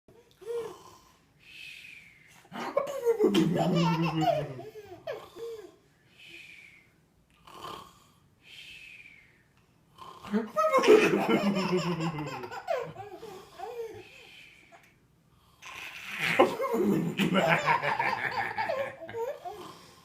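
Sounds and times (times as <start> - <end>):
baby laughing: 2.6 - 5.7, 10.5 - 14.0, 15.6 - 19.6
man snoring: 7.4 - 8.1.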